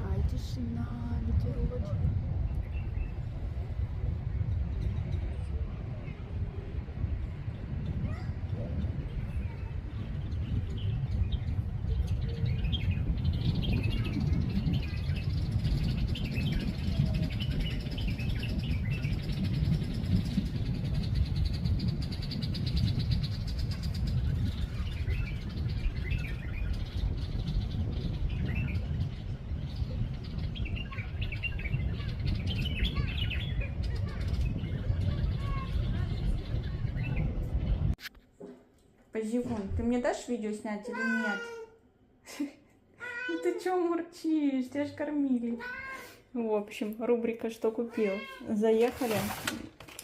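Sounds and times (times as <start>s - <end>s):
wind rumble on microphone: 0.0s - 38.0s, 39.3s - 41.5s
small birds chirping: 7.0s - 38.0s, 47.6s - 49.2s.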